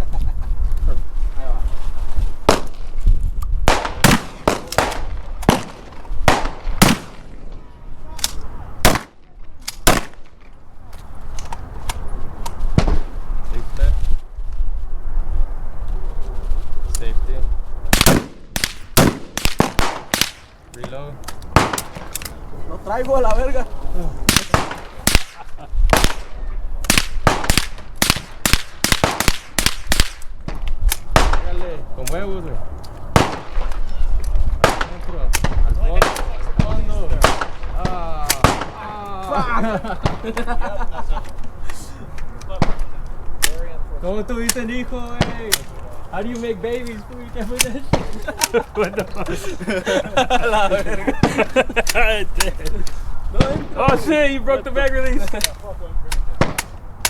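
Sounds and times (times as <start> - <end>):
gunshots with echoes: 3.7 - 7.3.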